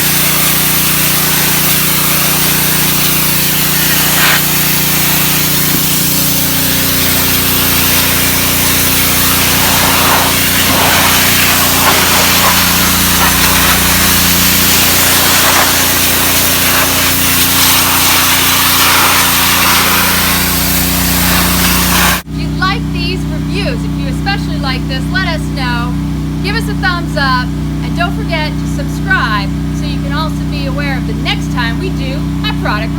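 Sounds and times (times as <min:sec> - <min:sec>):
high-pressure water spray hissing: 0:00.0 - 0:22.3
pressure washer engine droning: 0:00.0 - 0:32.9.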